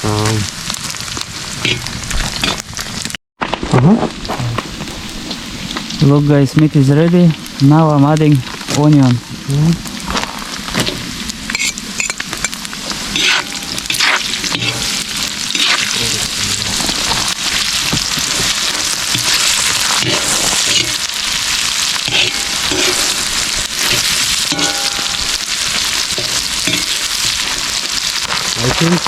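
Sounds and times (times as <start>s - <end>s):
onions sizzling in hot oil: 0.0s - 29.0s
pan stirring scrapes: 13.0s - 28.6s.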